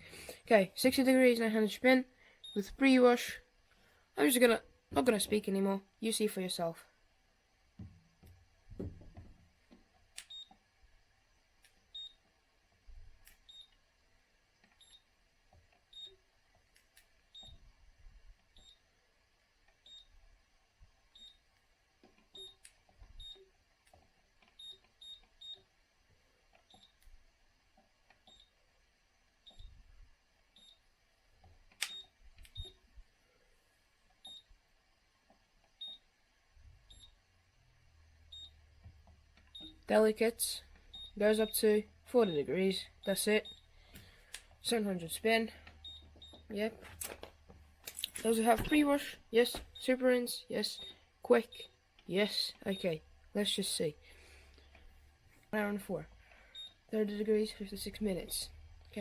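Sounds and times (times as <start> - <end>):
washing machine short high beeps: 22.4 - 22.6, 38.3 - 38.6, 40.9 - 41.6.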